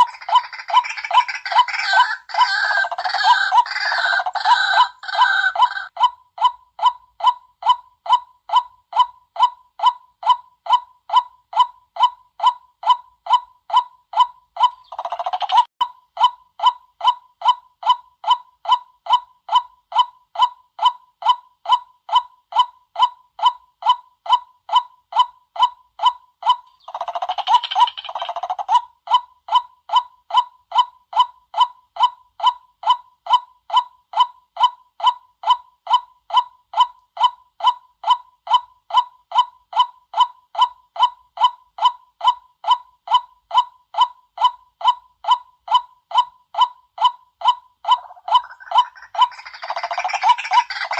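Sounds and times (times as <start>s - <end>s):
waterhen kwak calls: 0.0s - 5.9s, 47.9s - 50.9s.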